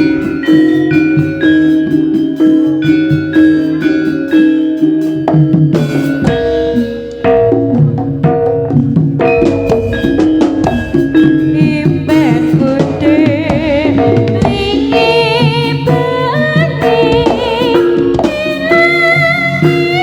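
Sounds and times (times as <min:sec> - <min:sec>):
hand drums beating: 0:00.0 - 0:20.0
metallophone notes: 0:00.0 - 0:20.0
person singing with vibrato: 0:11.2 - 0:20.0.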